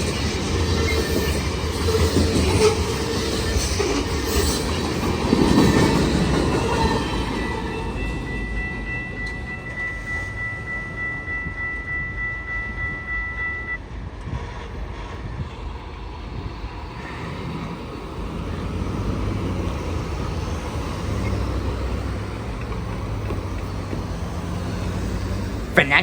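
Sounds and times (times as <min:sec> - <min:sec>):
road vehicle rumble: 0:00.0 - 0:26.0
level crossing bell ringing: 0:07.4 - 0:13.8.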